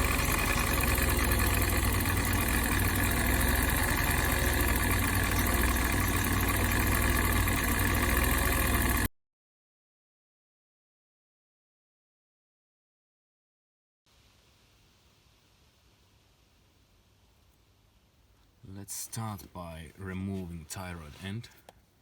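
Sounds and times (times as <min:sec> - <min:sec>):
car engine idling: 0:00.0 - 0:09.1.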